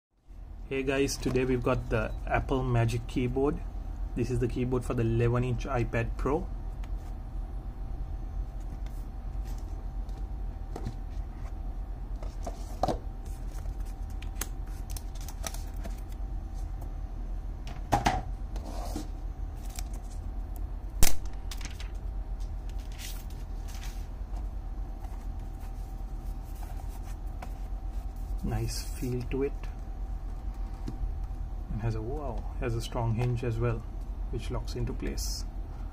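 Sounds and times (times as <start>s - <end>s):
steady low hum: 0.2s - 35.9s
box and packaging handled: 8.6s - 16.2s, 25.0s - 29.4s
packaging rustling: 12.2s - 16.2s.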